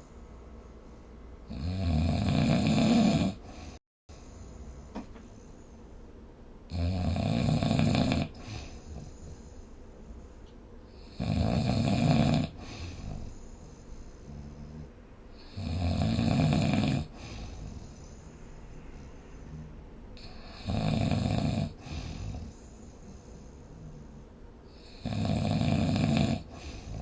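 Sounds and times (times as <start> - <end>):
quiet breathing: 0.0 - 1.5, 2.9 - 6.3, 7.6 - 27.0
person snoring: 1.5 - 3.8, 6.7 - 9.4, 11.0 - 13.7, 14.3 - 18.2, 19.4 - 22.6, 23.8 - 27.0.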